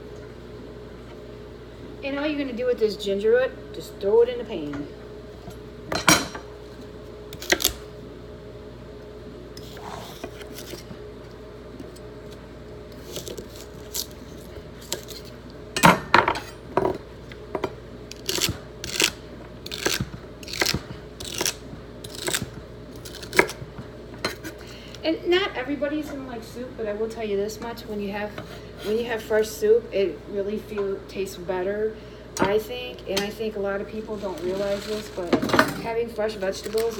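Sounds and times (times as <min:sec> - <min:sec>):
faint steady hum: 0:00.0 - 0:36.9.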